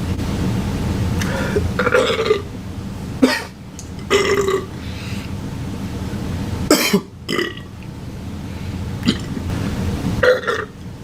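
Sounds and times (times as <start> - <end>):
man burping: 1.5 - 2.5, 4.1 - 4.7, 9.0 - 9.3, 10.2 - 10.7.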